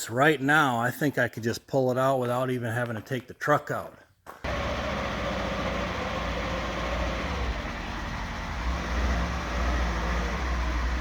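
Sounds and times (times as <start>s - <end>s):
utility vehicle engine rumble: 4.5s - 11.0s.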